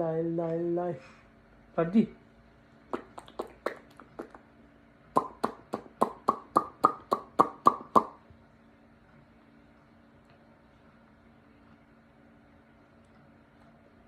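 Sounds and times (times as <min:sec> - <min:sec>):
hands clapping: 0:02.9 - 0:04.4, 0:05.2 - 0:08.2.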